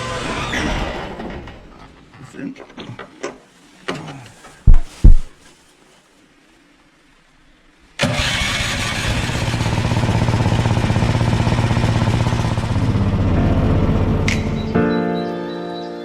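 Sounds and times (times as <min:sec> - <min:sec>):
engine running loudly: 0:08.6 - 0:14.7.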